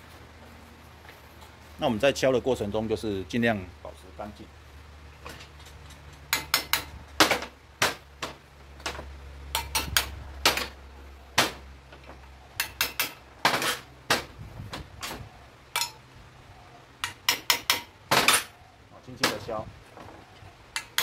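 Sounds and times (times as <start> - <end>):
hammer tapping on metal: 6.2 - 6.9, 9.5 - 10.7, 12.6 - 13.2, 17.0 - 18.5.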